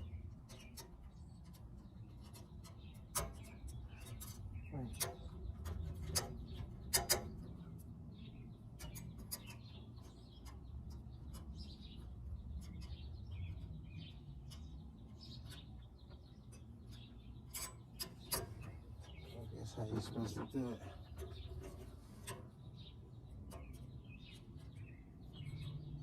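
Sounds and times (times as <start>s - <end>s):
birds chirping: 0.0s - 26.0s
clicks and knocks of hand work: 0.4s - 7.5s, 14.4s - 19.4s.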